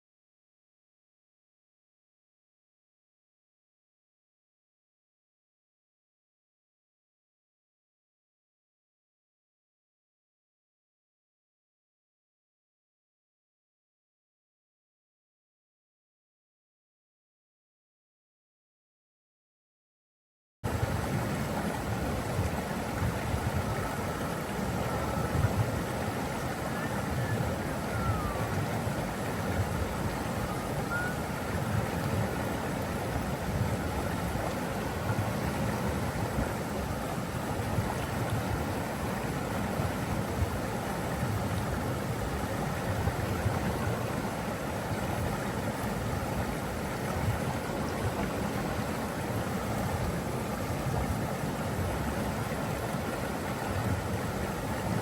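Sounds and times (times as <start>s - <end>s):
rushing water: 20.7s - 55.0s.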